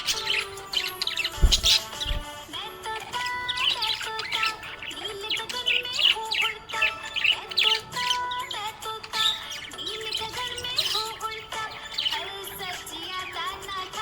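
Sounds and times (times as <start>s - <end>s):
background music: 0.0s - 14.0s
budgerigars chirping and warbling: 0.0s - 14.0s.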